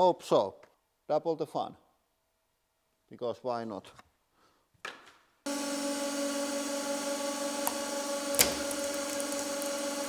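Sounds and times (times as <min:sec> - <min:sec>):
hydraulic press pump humming: 0:05.5 - 0:10.0
sharp crack: 0:07.7 - 0:10.0.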